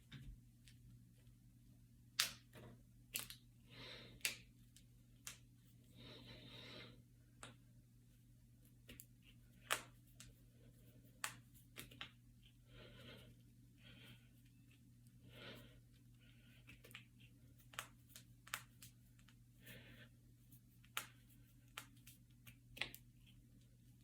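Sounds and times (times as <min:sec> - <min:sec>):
knuckles cracking: 0:02.2 - 0:03.4, 0:04.2 - 0:05.4
soft breathing: 0:03.6 - 0:04.9, 0:05.6 - 0:07.6, 0:10.2 - 0:11.2, 0:12.4 - 0:17.6, 0:19.1 - 0:21.7.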